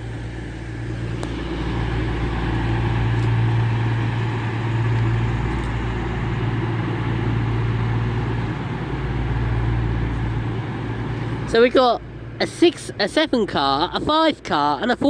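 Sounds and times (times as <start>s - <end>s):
diesel train engines idling: 0.0s - 15.0s.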